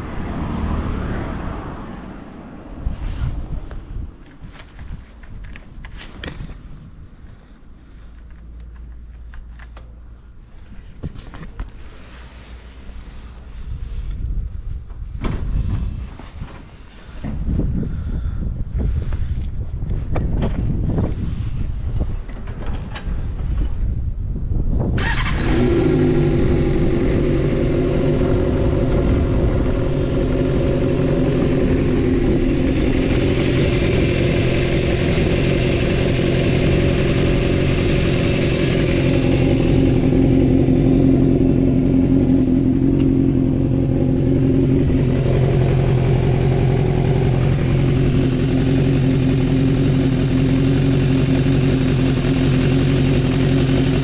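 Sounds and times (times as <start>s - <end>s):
motorcycle engine starting and idling: 24.8s - 54.0s.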